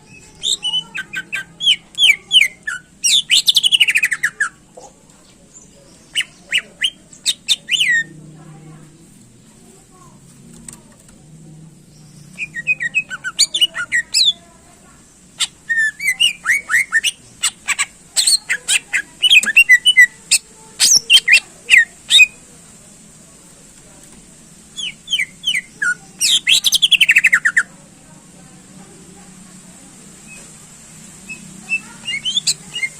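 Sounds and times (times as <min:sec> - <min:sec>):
bird chirping and whistling: 0:00.1 - 0:04.4, 0:06.1 - 0:08.1, 0:12.3 - 0:14.3, 0:15.4 - 0:17.6, 0:24.8 - 0:27.6, 0:31.3 - 0:32.9.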